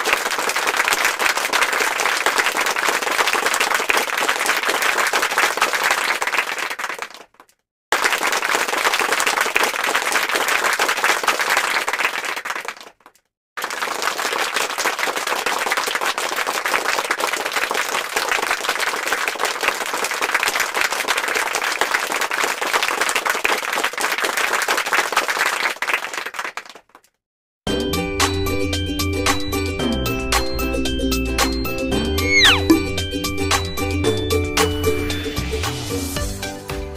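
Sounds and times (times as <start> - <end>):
crowd clapping: 0.0 - 27.1.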